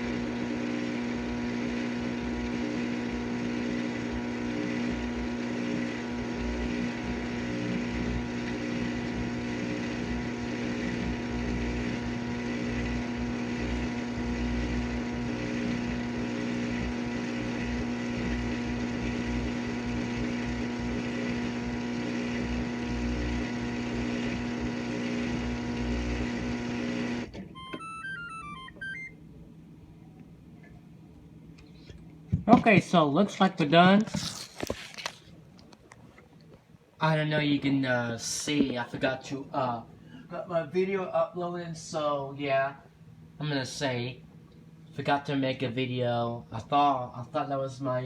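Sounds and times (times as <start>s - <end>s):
dishwasher motor hum: 0.0s - 29.2s
electronic beeps: 27.6s - 29.1s.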